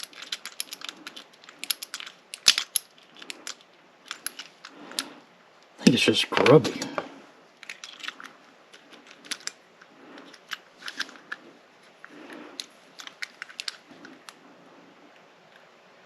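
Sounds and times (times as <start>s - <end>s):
lock pick clicking and scraping: 0.0s - 5.1s, 12.6s - 14.4s.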